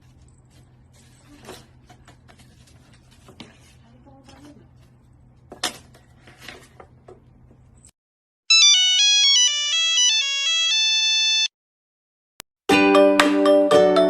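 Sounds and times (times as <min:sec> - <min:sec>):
electronic ringtone melody: 0:08.5 - 0:11.5.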